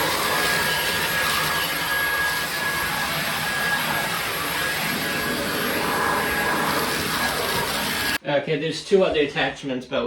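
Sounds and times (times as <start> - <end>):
high-pitched motor whine: 0.0 - 8.2
vacuum cleaner running: 0.0 - 8.2.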